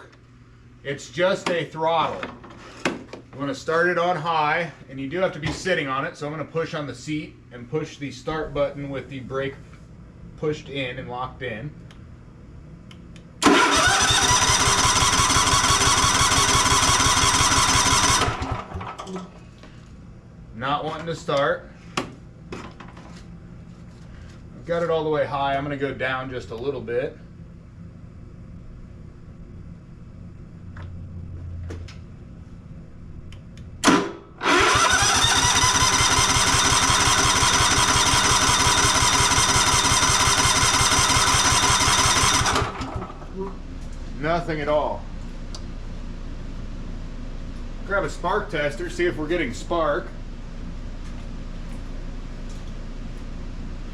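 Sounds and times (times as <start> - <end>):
starter motor cranking engine: 13.4 - 19.0, 33.8 - 43.2.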